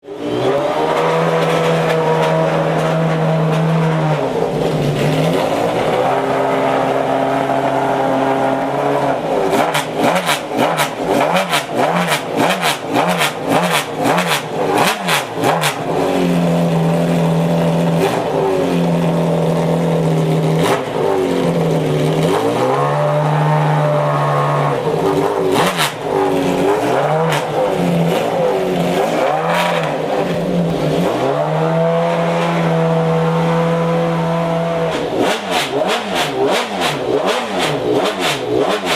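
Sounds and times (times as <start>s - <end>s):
car engine revving: 0.0s - 38.9s
exhaust cracks: 24.3s - 31.4s.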